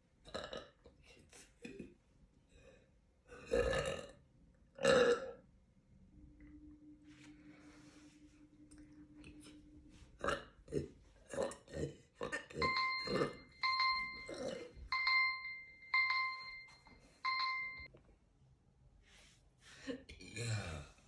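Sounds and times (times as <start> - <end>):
woman burping: 3.4 - 4.2, 4.8 - 5.4
high beeping tone: 12.6 - 17.9.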